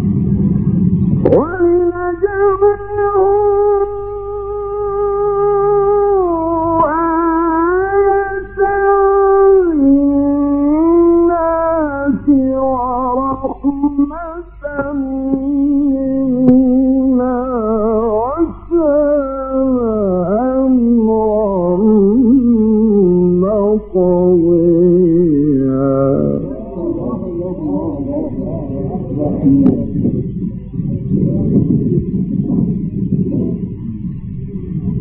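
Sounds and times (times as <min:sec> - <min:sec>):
low steady hum: 0:00.0 - 0:35.0
man chanting recitation: 0:01.2 - 0:35.0.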